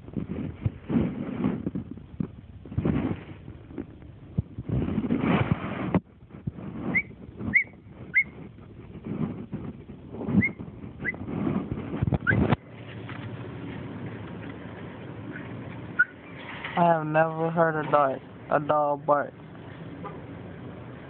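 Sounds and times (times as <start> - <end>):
low rumbling and rustling: 0.0 - 21.0.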